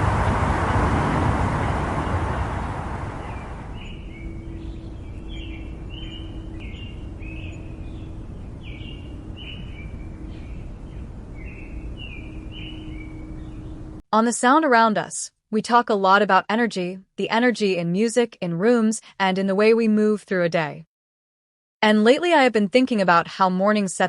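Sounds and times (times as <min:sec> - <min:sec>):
faint low hum: 0:00.0 - 0:14.0
vehicle passing: 0:00.0 - 0:14.0
small birds chirping: 0:01.7 - 0:14.0.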